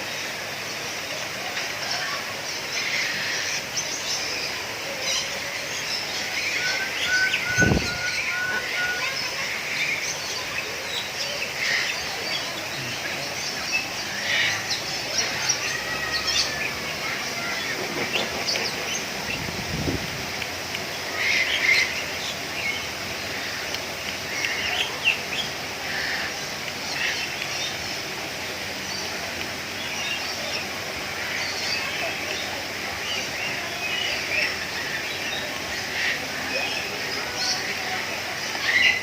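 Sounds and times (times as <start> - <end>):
birds chirping and calling: 0.2 - 39.0.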